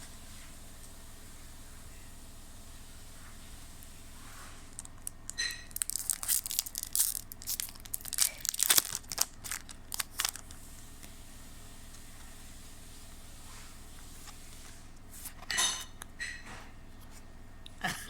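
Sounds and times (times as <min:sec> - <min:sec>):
foil wrapper crinkling and tearing: 0:04.7 - 0:11.2.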